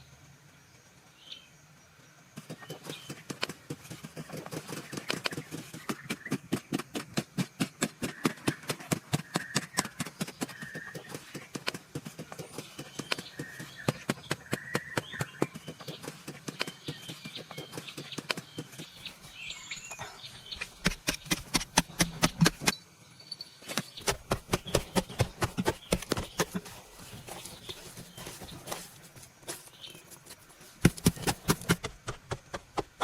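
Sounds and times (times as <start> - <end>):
birds chirping: 2.4 - 33.0
rapid knocking: 20.5 - 22.7, 24.0 - 29.7, 30.3 - 33.0.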